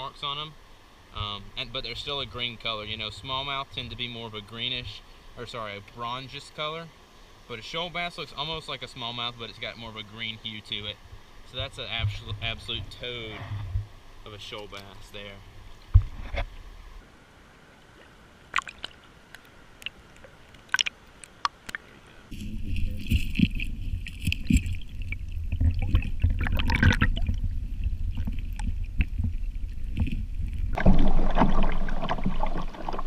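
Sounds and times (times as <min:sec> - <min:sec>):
water sloshing around a boat: 0:17.8 - 0:33.0.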